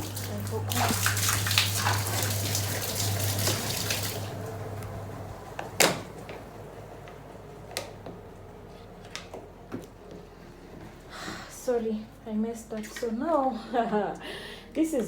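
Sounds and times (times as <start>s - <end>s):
water rushing from drain hose: 0.0s - 9.4s
spin dryer motor humming: 0.0s - 15.0s.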